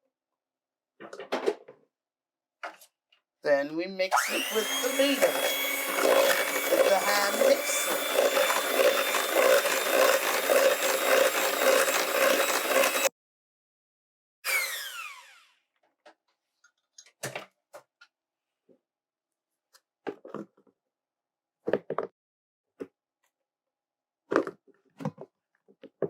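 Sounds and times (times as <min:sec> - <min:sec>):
electric hand mixer whine: 0:04.1 - 0:13.1, 0:14.5 - 0:15.6.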